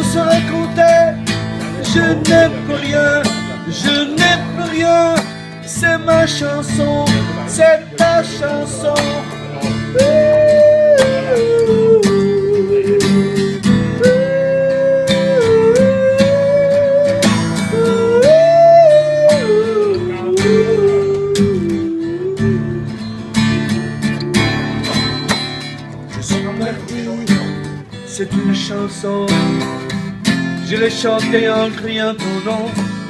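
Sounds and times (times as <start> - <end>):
strummed acoustic guitar: 0.0 - 33.0
sliding lead melody: 9.2 - 27.9.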